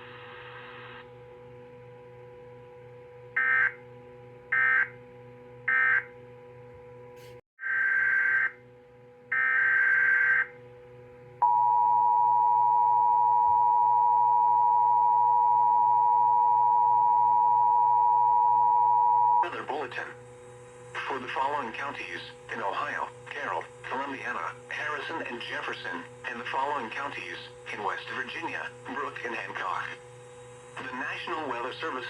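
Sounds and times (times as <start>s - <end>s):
steady attention tone: 11.4s - 32.0s.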